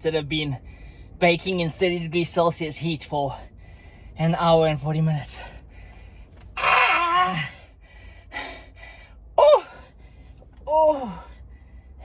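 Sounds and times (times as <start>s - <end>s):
man yelping in pain: 6.6s - 7.6s.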